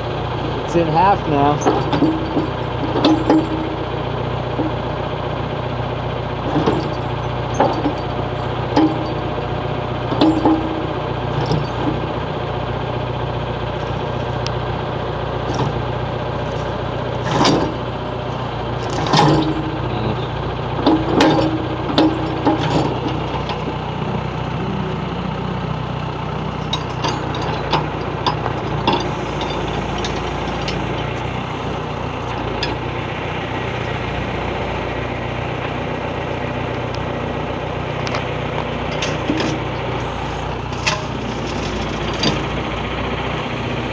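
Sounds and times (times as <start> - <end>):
diesel engine running: 0.0 - 43.9.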